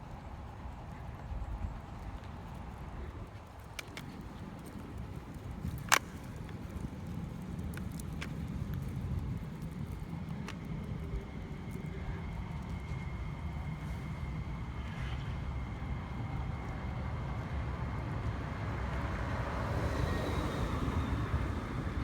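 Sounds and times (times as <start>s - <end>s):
traffic rumble: 0.0s - 22.0s
vehicle approaching: 9.6s - 22.0s.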